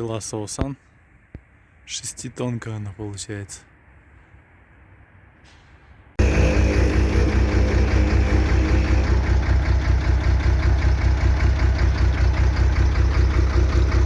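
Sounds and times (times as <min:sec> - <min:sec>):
hydraulic pump pulsing hum: 0:06.2 - 0:14.0.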